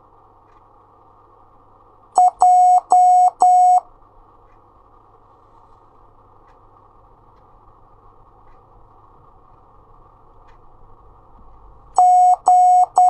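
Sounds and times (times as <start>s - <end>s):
faint steady hiss: 0.0s - 13.0s
morse code beeps: 2.2s - 3.8s, 12.0s - 13.0s.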